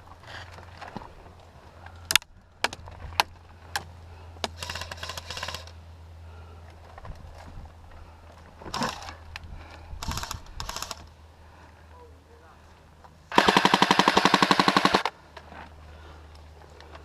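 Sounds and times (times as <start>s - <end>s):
airsoft gun full-auto rattle: 4.4s - 5.8s, 8.7s - 9.2s, 10.0s - 11.1s, 13.3s - 15.2s.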